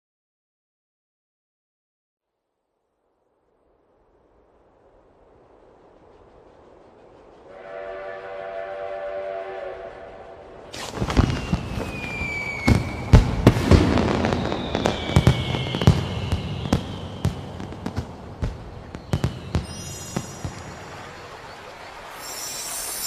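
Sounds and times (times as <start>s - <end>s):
steam train whistle: 7.5s - 10.6s
fireworks bangs and crackles: 10.7s - 22.7s
whistling fireworks shells: 10.7s - 23.0s.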